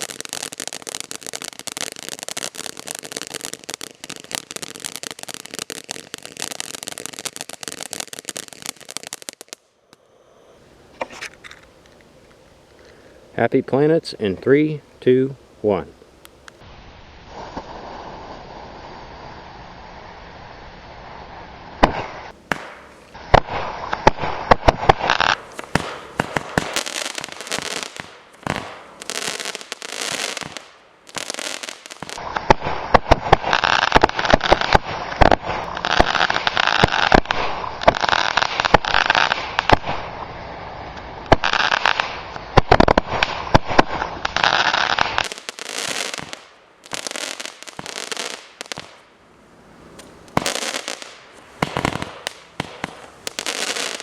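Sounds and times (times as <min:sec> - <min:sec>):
firework cracks and crackling: 0:00.0 - 0:10.0, 0:16.5 - 0:49.1, 0:50.0 - 0:54.0.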